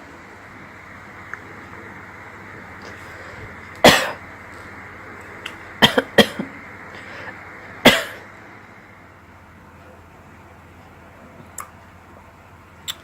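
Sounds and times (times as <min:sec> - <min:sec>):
person coughing: 0:03.8 - 0:04.2, 0:05.8 - 0:06.6, 0:07.8 - 0:08.2.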